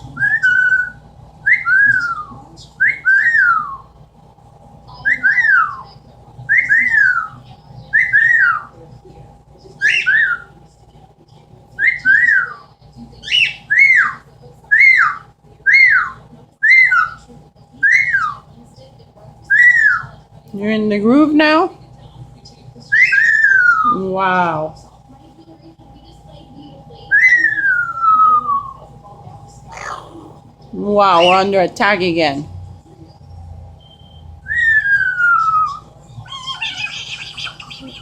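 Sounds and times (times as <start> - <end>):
parrot whistling: 0.2 - 3.9, 5.0 - 5.8, 8.0 - 8.7, 9.8 - 10.5, 23.0 - 23.9, 29.7 - 30.4, 31.1 - 31.6, 34.0 - 38.0.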